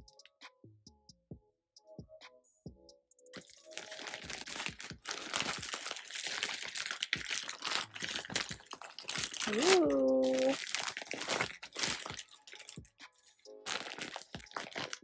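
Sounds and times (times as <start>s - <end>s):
faint background music: 0.0s - 15.0s
packaging crinkling: 3.4s - 12.8s, 13.7s - 15.0s.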